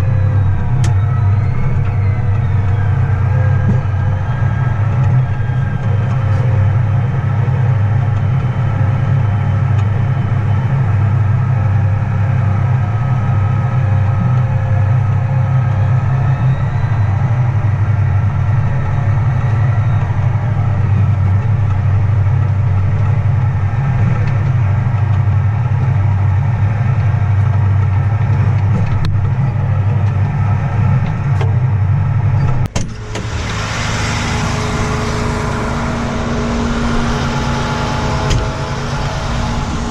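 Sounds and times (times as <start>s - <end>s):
vehicle engine droning: 0.0s - 39.9s
bright hissy noise: 33.0s - 39.9s.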